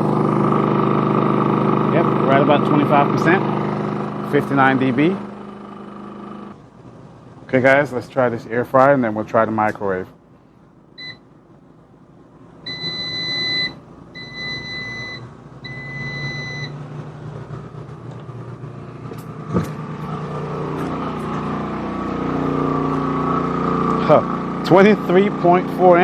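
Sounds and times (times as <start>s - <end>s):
air fryer control panel beeping: 0.0s - 6.5s, 11.0s - 11.3s, 12.6s - 17.0s, 19.0s - 26.0s
generator engine hum: 0.0s - 26.0s.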